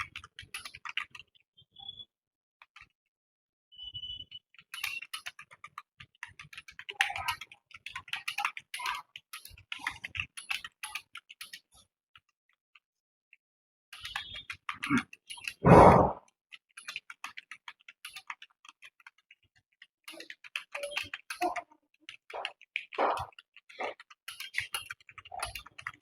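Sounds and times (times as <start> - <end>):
computer keyboard typing: 0.0 - 1.4, 4.4 - 12.3, 13.9 - 15.8, 16.5 - 26.0.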